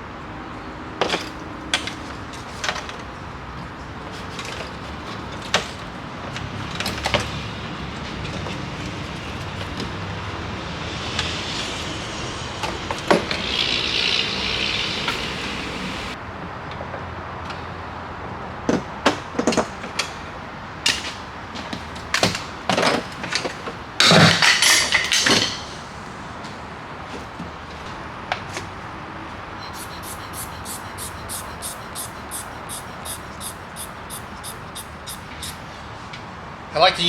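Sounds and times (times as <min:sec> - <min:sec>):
hissing whir: 0:09.2 - 0:16.2, 0:29.6 - 0:35.6.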